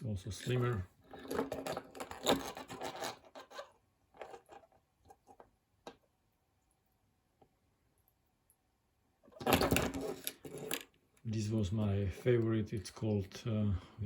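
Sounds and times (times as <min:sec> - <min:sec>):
pocket knives rubbing and scraping: 0:00.4 - 0:05.3.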